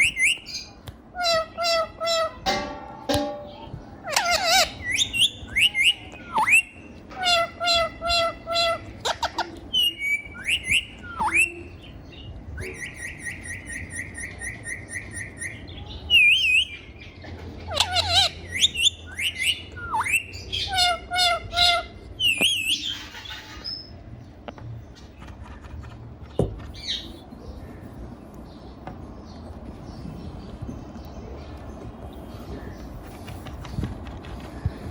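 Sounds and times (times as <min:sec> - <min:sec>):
parrot calling: 0:00.0 - 0:02.4, 0:04.0 - 0:11.7, 0:17.7 - 0:23.6.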